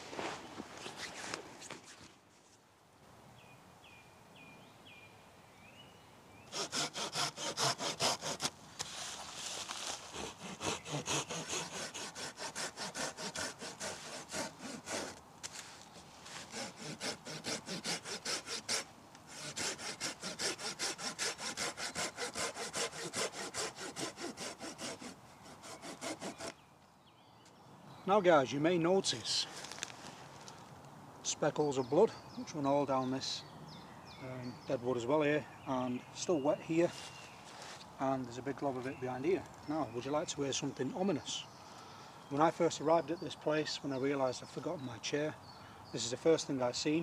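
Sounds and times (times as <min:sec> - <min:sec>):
bird chirping: 0:03.4 - 0:06.6, 0:25.3 - 0:29.2, 0:31.4 - 0:47.0
hand saw cutting wood: 0:06.5 - 0:26.6.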